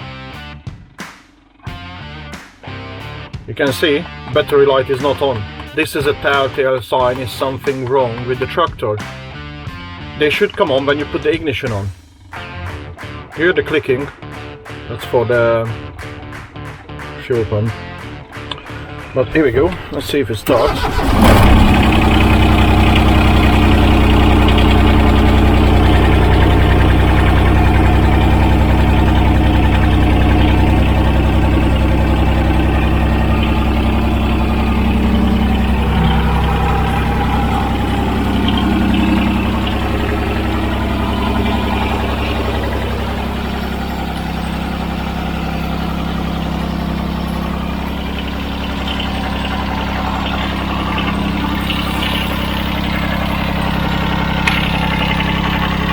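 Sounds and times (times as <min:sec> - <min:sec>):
diesel tractor engine idling: 0:18.4 - 0:55.9.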